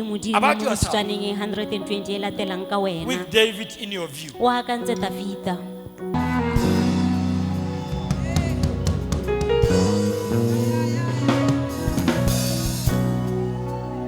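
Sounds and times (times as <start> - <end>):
band music with drum kit: 6.2 - 13.9.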